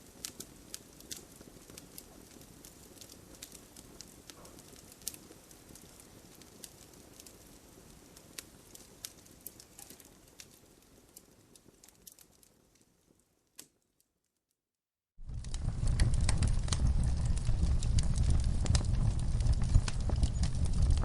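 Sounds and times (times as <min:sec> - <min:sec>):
fire crackling and popping: 0:00.0 - 0:14.0, 0:15.2 - 0:21.0
deep rumble with crackles: 0:15.2 - 0:21.0.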